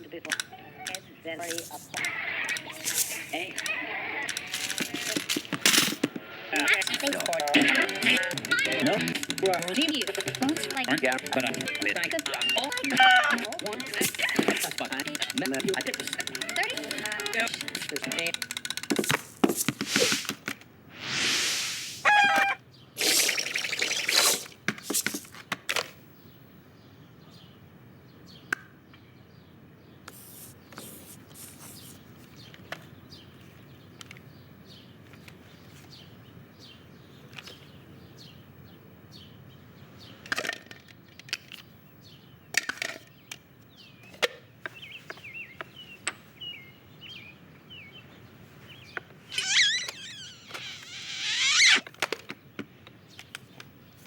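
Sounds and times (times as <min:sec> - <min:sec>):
small taps and clicks: 0:06.7 - 0:20.6
loud swishing rushes: 0:21.0 - 0:22.1
bird chirps: 0:21.0 - 0:25.2, 0:43.2 - 0:51.9.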